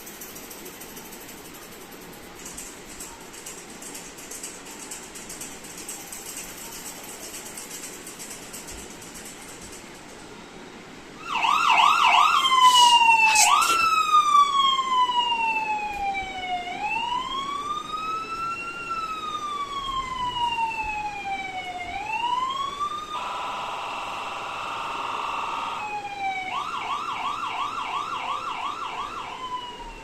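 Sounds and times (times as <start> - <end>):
electronic siren wailing: 11.2 - 30.0
short noise bursts: 11.9 - 14.0.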